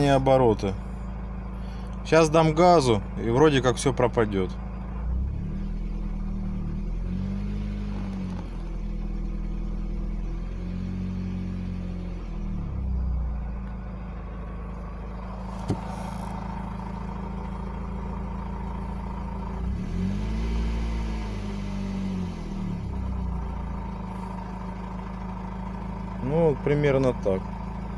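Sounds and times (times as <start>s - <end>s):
car engine revving and idling: 0.0s - 27.9s
engine knock: 13.7s - 19.6s, 23.0s - 27.9s.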